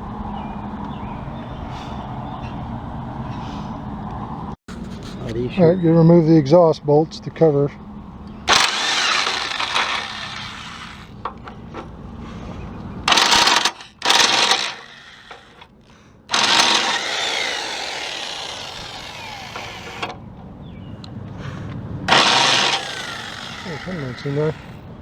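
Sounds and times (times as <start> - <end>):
impact wrench running in bursts: 8.5 - 11.1, 13.1 - 15.6, 16.3 - 20.1, 22.1 - 24.8.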